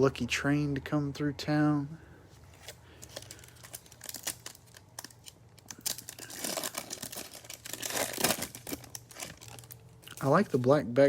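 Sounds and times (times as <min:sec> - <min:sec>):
card pack wrapper tearing and crinkling: 0:02.5 - 0:10.6.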